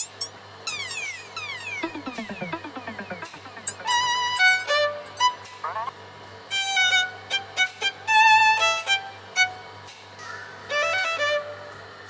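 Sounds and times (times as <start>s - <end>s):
fiddle playing lively tune: 1.8s - 5.9s, 6.5s - 9.8s, 10.7s - 11.7s.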